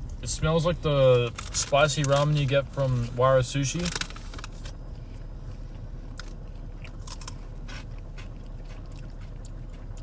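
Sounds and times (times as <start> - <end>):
low steady hum: 0.0 - 10.0
person chewing crunchy snacks: 3.9 - 10.0.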